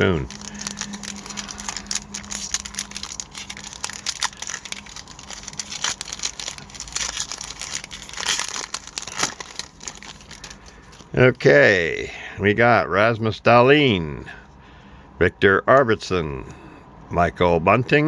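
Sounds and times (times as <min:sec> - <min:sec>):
wrapper being torn and crinkled: 0:00.0 - 0:11.1.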